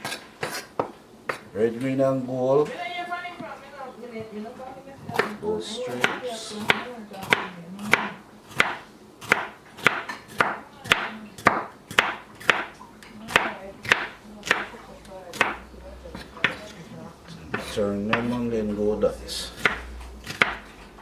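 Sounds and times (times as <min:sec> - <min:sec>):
knife chopping on cutting board: 0:00.0 - 0:01.5, 0:05.1 - 0:16.7, 0:17.5 - 0:18.5, 0:19.5 - 0:20.9.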